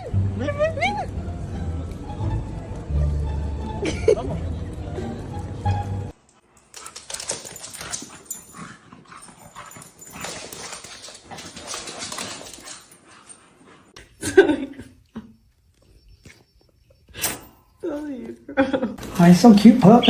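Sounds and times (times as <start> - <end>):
rustling and scuffling: 6.6 - 14.2.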